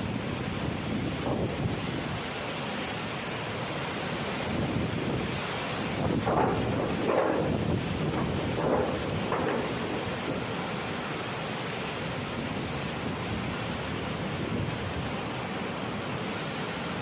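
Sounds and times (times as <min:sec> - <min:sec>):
wind buffeting microphone: 0:00.0 - 0:02.3, 0:04.4 - 0:10.9, 0:12.1 - 0:15.3
hurricane wind rushing: 0:00.0 - 0:17.0
surging water: 0:00.0 - 0:17.0.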